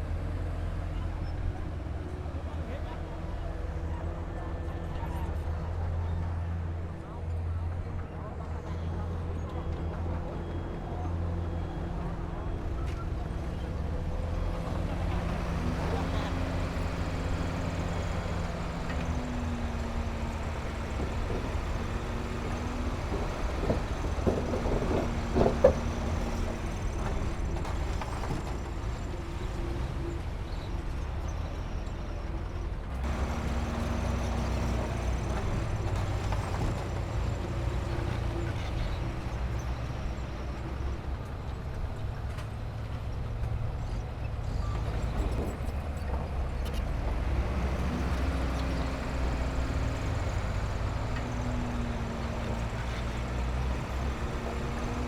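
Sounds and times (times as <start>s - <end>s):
heavy machinery diesel engine running: 0.0s - 55.0s
clatter of knocks: 20.2s - 28.7s.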